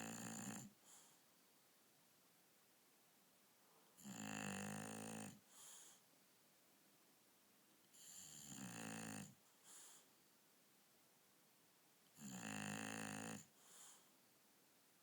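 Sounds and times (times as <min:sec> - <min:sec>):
dog snoring: 0:00.0 - 0:01.2, 0:04.0 - 0:06.0, 0:07.9 - 0:10.1, 0:12.2 - 0:14.1.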